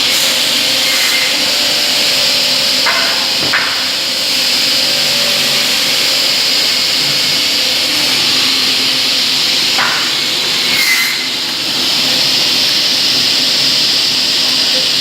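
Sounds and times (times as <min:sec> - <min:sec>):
cutting machine whooshing: 0:00.0 - 0:15.0.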